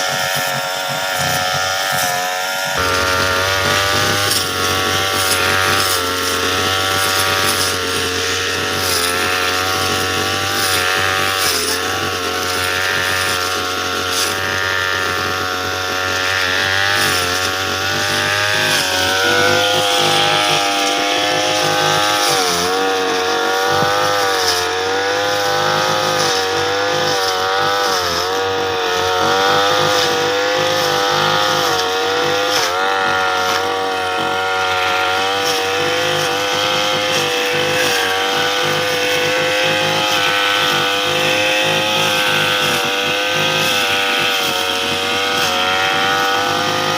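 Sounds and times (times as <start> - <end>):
blade cutting grass: 0.0 - 46.9
brush cutter engine running: 0.0 - 46.9.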